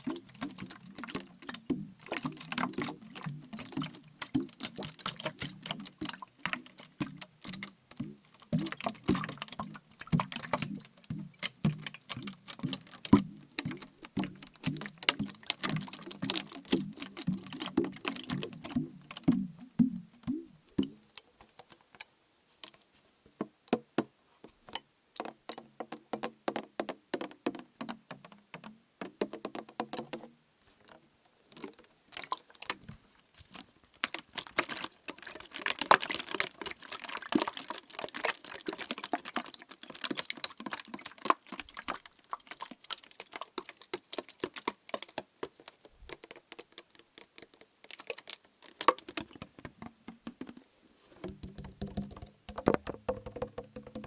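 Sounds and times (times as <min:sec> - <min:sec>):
liquid sloshing in bottle: 0:51.2 - 0:54.0
tapping on plastic bottle: 0:51.2 - 0:54.0.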